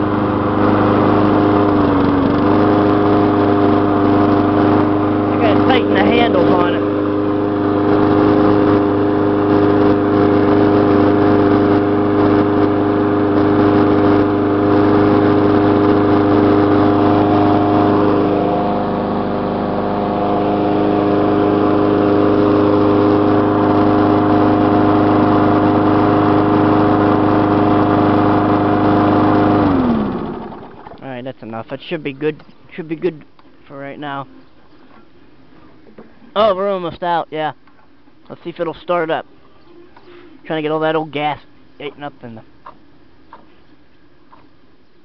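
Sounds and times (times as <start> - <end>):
lawn mower engine running: 0.0 - 34.4
steady whine: 5.3 - 9.0.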